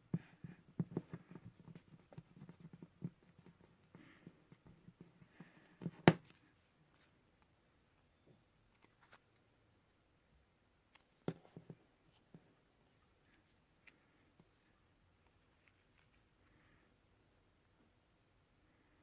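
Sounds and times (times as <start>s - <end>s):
paper rustling: 8.7s - 9.4s.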